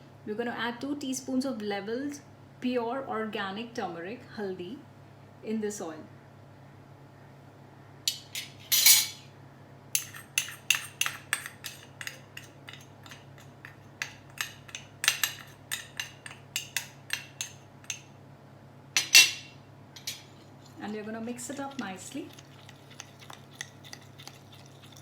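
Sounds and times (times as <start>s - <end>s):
metal teaspoon tapping a bowl: 10.0s - 18.1s
spoon scraping: 10.0s - 18.1s, 20.0s - 25.0s.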